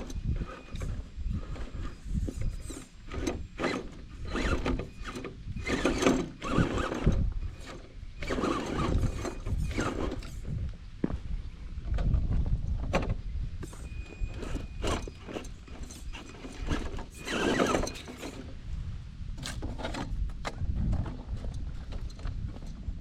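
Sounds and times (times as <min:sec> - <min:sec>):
electric motor and gears whining: 0:00.0 - 0:11.2, 0:12.0 - 0:18.7.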